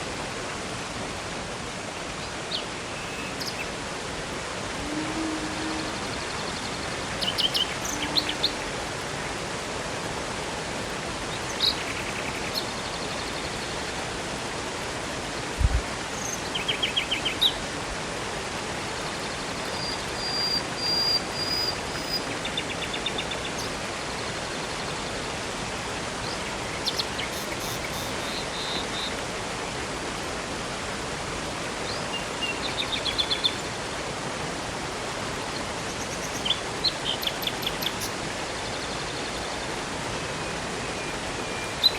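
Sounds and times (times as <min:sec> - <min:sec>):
river and waterfall rushing: 0:00.0 - 0:41.9
songbirds chirping: 0:04.8 - 0:08.9, 0:26.1 - 0:29.3.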